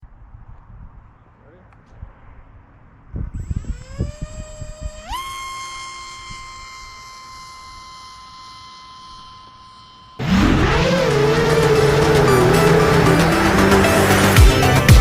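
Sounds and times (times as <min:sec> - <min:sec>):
electric motor and propeller whine: 0:03.3 - 0:15.0
low thumps: 0:10.2 - 0:15.0.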